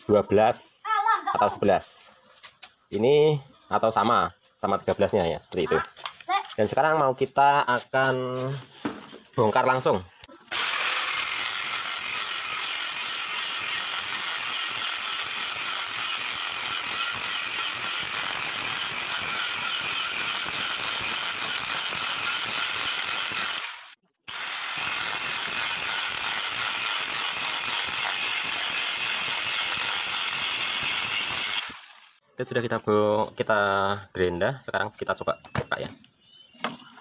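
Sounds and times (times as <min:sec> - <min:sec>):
angle grinder cutting steel: 0:10.3 - 0:32.2.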